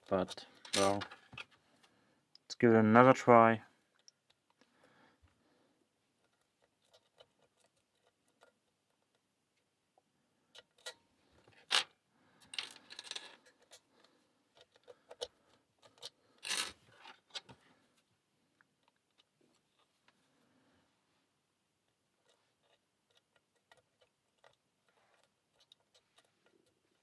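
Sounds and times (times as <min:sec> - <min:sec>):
lock picks clicking and scraping: 0:00.0 - 0:01.6, 0:06.2 - 0:09.1, 0:10.5 - 0:17.5, 0:22.2 - 0:27.0.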